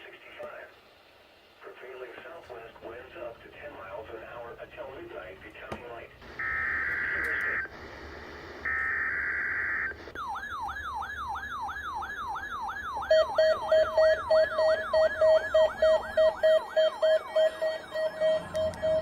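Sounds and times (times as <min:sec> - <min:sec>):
siren alarm whooping: 0:06.2 - 0:07.7, 0:08.6 - 0:19.0
rapid alarm beeping: 0:06.3 - 0:07.7, 0:08.6 - 0:19.0.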